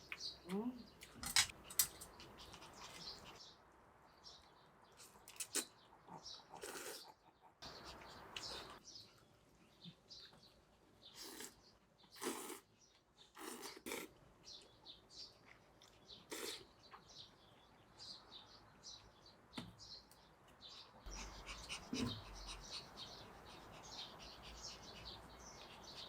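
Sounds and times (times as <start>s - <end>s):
faint bird chirping: 0.0s - 26.0s.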